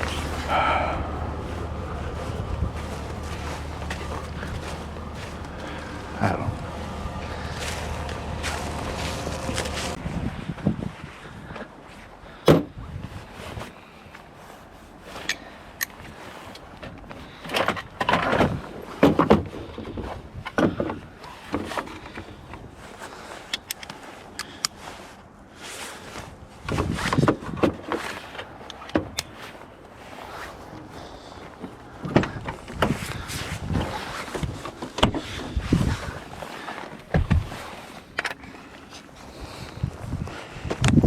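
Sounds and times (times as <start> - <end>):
knocks and clanks on a truck: 0.0 - 10.0, 17.4 - 22.7, 31.5 - 36.2, 37.1 - 37.6.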